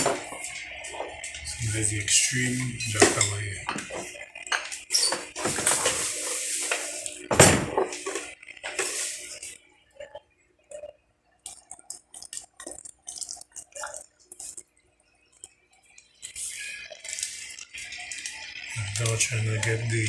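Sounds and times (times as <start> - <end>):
metal clanking and knocking: 7.3 - 8.2.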